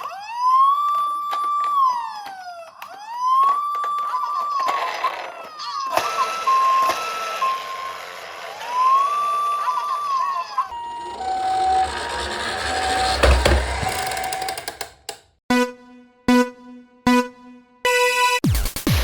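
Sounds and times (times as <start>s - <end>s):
toy siren wail: 0.0s - 11.1s
toy two-tone siren: 0.0s - 11.8s
low broken electronic tone: 10.7s - 15.2s.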